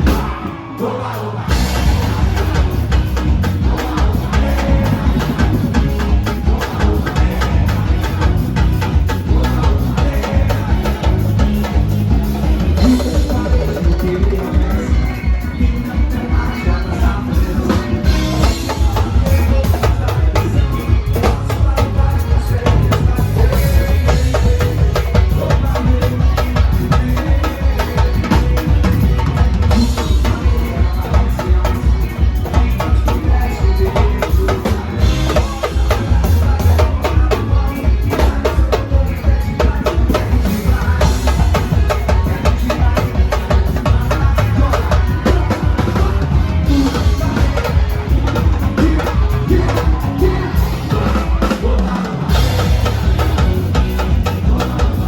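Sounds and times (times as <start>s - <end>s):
heavy drums and percussion: 0.0s - 55.0s
loud live band music: 0.0s - 55.0s
deep pounding bass beat: 1.4s - 55.0s.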